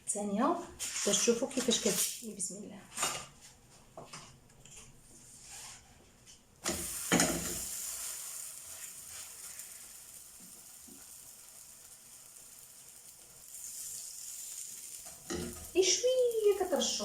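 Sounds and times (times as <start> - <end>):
dough sizzling on hot pan: 6.6 - 17.0.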